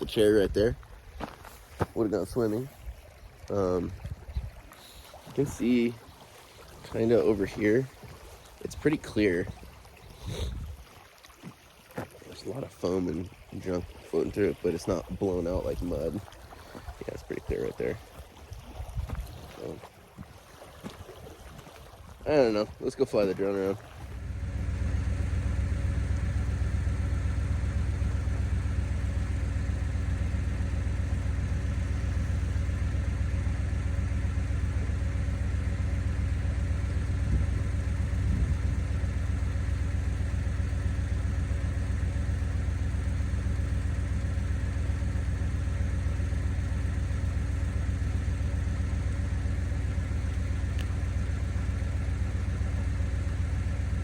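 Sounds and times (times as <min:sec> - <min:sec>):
motor hum: 0:00.0 - 0:54.0
deep low rumble: 0:24.1 - 0:54.0.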